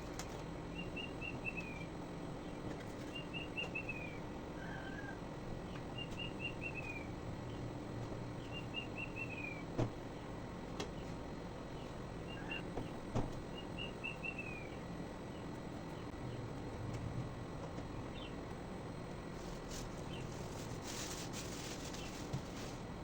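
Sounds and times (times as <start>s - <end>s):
bird chirping: 0.7s - 5.2s, 8.4s - 9.6s, 11.8s - 12.7s, 13.5s - 16.4s.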